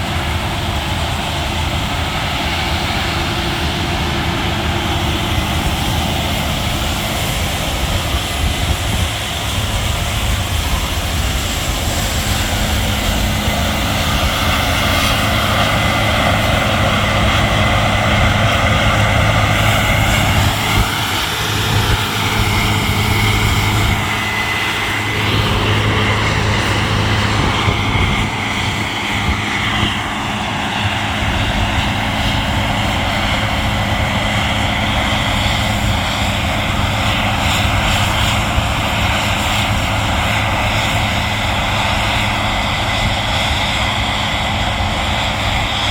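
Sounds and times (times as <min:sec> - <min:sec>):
diesel engine drone: 0:00.0 - 0:45.9.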